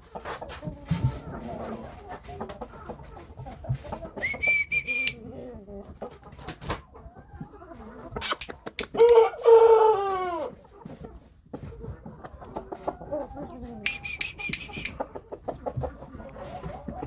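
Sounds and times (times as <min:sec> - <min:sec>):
rooster clucking: 0:00.0 - 0:17.0
rooster crowing: 0:09.0 - 0:10.5.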